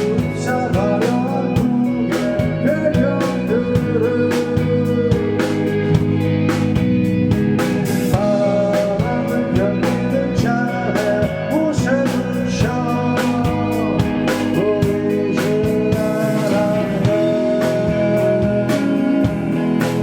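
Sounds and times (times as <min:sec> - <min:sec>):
bass guitar: 0:00.0 - 0:20.0
electric guitars: 0:00.0 - 0:20.0
drum hits: 0:04.7 - 0:10.2.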